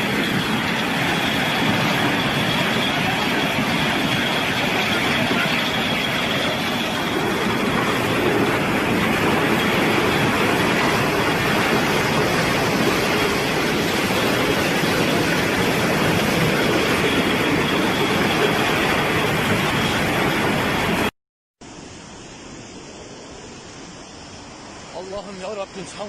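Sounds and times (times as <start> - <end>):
floodwater rushing: 0.0 - 21.1
quiet rush of water: 21.6 - 26.0.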